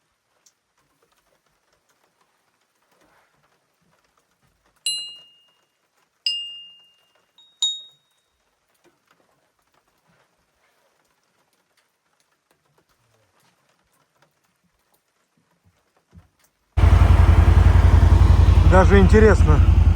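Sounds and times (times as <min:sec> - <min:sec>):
small bell ringing: 0:04.9 - 0:05.6, 0:06.3 - 0:08.2.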